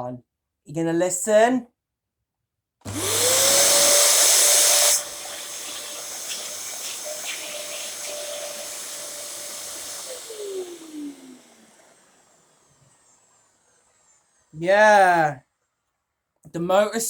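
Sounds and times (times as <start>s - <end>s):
rushing air: 2.9s - 12.2s
vacuum cleaner motor whine: 2.9s - 14.6s.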